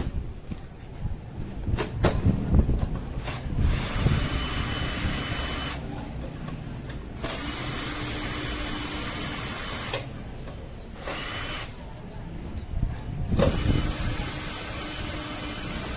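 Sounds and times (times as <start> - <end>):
small power tool running: 3.6 - 5.8, 7.2 - 10.0, 11.0 - 11.8, 13.4 - 15.9.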